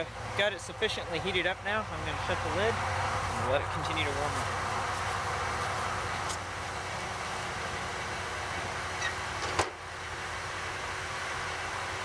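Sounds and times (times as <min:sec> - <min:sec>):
gasifier rushing noise: 0:00.0 - 0:12.0.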